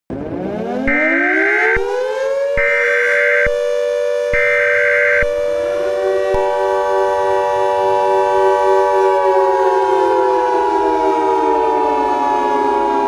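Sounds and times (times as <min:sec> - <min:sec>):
civil defense siren wailing: 0:00.1 - 0:13.0
long high electronic beeps: 0:04.3 - 0:05.5.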